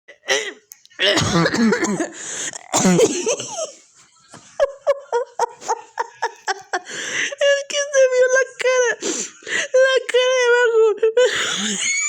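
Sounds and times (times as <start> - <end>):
woman laughing hard: 4.5 - 7.1.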